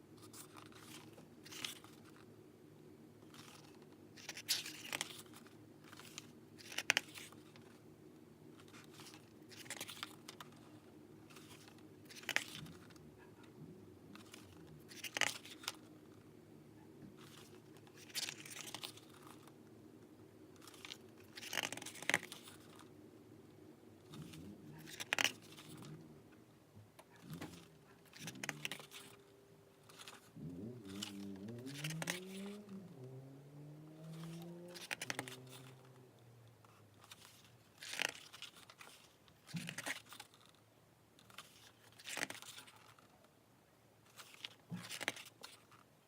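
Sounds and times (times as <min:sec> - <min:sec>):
faint low hum: 0:00.0 - 0:46.0
packaging crinkling and tearing: 0:00.2 - 0:02.2, 0:03.2 - 0:07.8, 0:08.6 - 0:13.5, 0:14.1 - 0:16.0, 0:17.2 - 0:19.6, 0:20.6 - 0:22.9, 0:24.0 - 0:26.1, 0:27.1 - 0:40.6, 0:41.2 - 0:43.1, 0:44.1 - 0:45.8.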